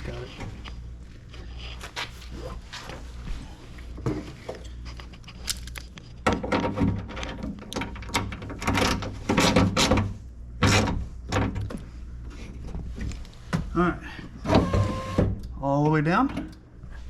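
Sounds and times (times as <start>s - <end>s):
power window motor humming: 14.4s - 15.4s.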